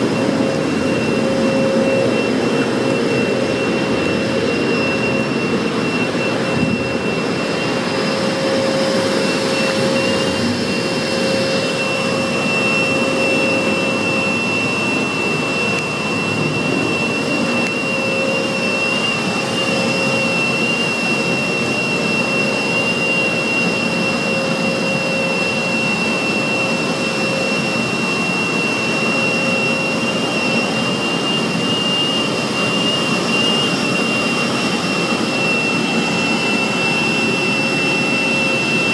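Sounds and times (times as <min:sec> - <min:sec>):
low hum: 0:00.0 - 0:27.5
car wash equipment rushing: 0:00.0 - 0:38.9
high-pitched whine: 0:00.0 - 0:38.9.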